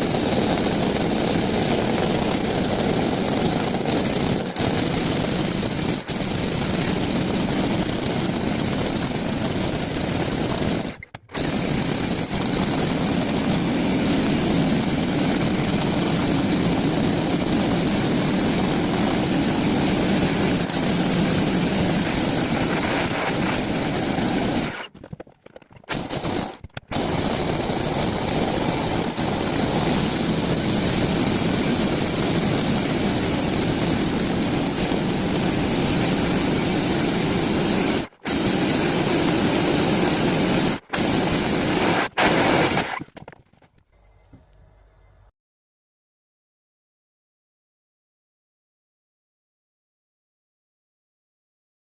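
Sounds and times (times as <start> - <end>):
power drill boring through wall: 0.0 - 24.9, 25.9 - 43.1.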